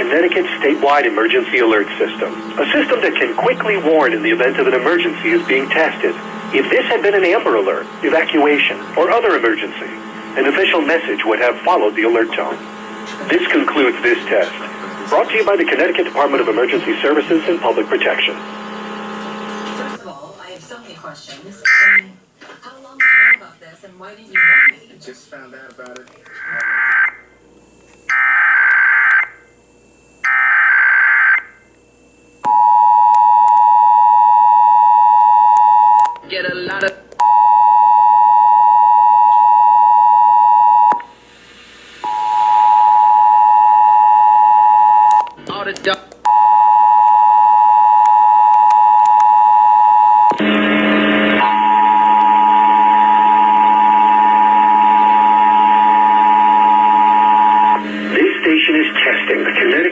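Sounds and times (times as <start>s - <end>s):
low hum: 0.0s - 20.0s, 46.3s - 59.5s
two-tone attention signal: 21.7s - 22.0s, 37.2s - 41.1s, 42.1s - 45.3s, 46.3s - 58.4s.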